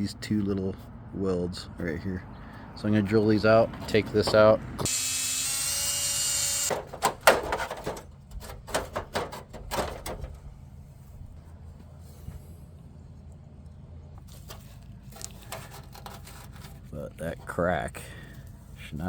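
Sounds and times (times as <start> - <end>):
low steady hum: 0.0 - 19.0
electric drill stopping: 4.9 - 6.7
metal hinge parts clicking: 6.7 - 10.5.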